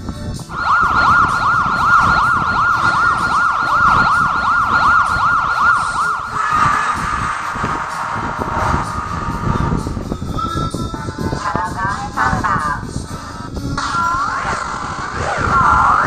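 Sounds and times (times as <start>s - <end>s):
electronic siren yelping: 0.5s - 10.0s, 15.1s - 16.0s.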